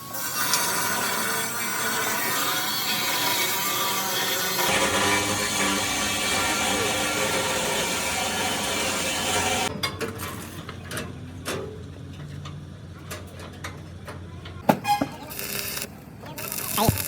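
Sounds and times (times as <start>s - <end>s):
power tool running: 0.5s - 9.7s.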